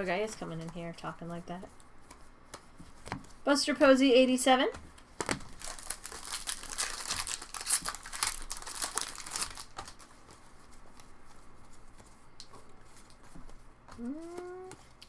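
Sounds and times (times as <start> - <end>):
foil wrappers crinkling and tearing: 5.2 - 10.8.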